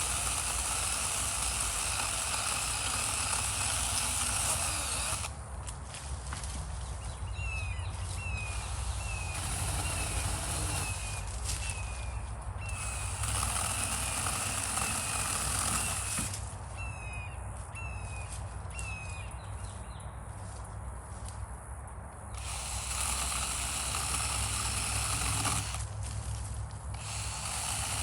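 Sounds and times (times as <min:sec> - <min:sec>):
chainsaw cutting wood: 0:00.0 - 0:05.4, 0:08.2 - 0:11.9, 0:12.6 - 0:16.5, 0:22.4 - 0:26.0, 0:26.9 - 0:28.0.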